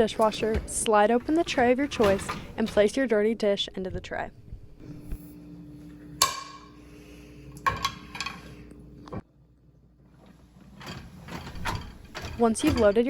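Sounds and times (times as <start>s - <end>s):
dishes clinking: 6.2s - 6.8s, 7.6s - 8.6s
dishes rattling: 7.6s - 8.6s, 10.7s - 13.0s.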